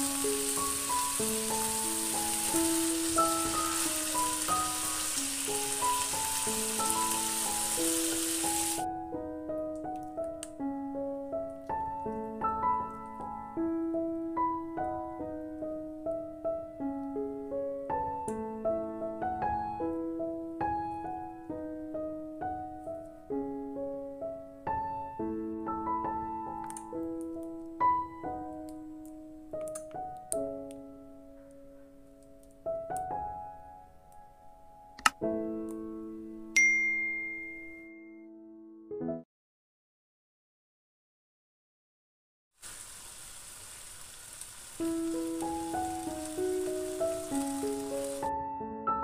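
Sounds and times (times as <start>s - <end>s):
food frying in oil: 0.0s - 8.8s, 42.6s - 48.3s
soft piano music: 0.0s - 39.3s, 44.8s - 49.0s.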